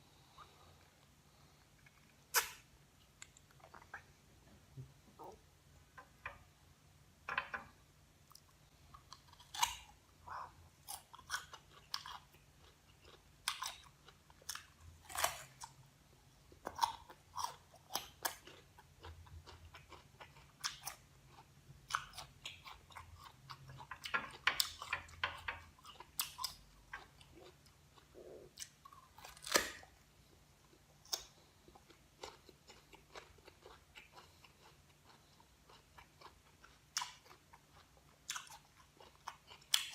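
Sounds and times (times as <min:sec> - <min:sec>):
crunchy chewing of fruit: 0:08.3 - 0:15.8, 0:16.5 - 0:24.9, 0:30.6 - 0:39.9.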